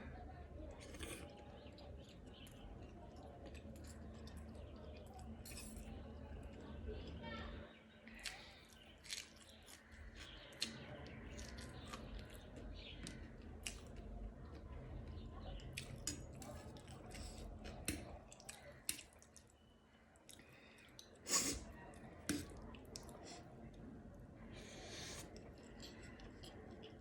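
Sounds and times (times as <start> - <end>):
person chewing: 0.8 - 5.3, 8.1 - 14.7, 15.6 - 19.5.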